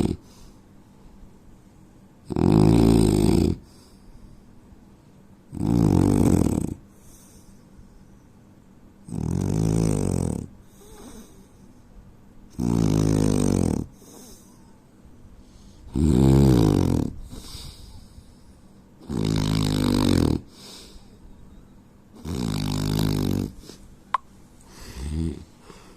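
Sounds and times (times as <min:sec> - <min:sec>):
man snoring: 0:00.0 - 0:00.2, 0:02.3 - 0:03.7, 0:05.5 - 0:06.8, 0:09.1 - 0:11.2, 0:12.5 - 0:14.0, 0:15.9 - 0:17.2, 0:19.0 - 0:20.5, 0:22.2 - 0:23.6, 0:24.8 - 0:25.5
soft breaths: 0:00.0 - 0:01.9, 0:03.6 - 0:05.3, 0:06.8 - 0:08.6, 0:10.6 - 0:12.1, 0:13.8 - 0:16.0, 0:17.1 - 0:19.0, 0:20.4 - 0:21.8, 0:23.5 - 0:25.9.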